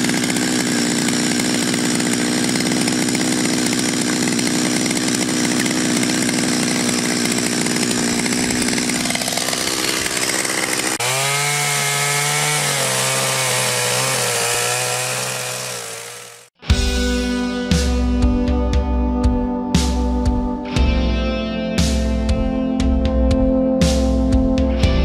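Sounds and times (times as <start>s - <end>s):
chainsaw cutting wood: 0.0s - 16.6s.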